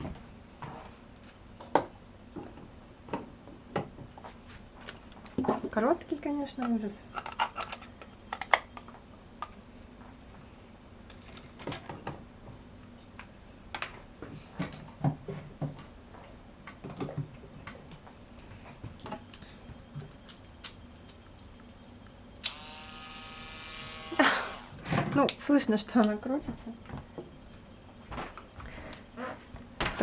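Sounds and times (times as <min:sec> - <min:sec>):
mini electric drill whine: 0:22.4 - 0:24.8.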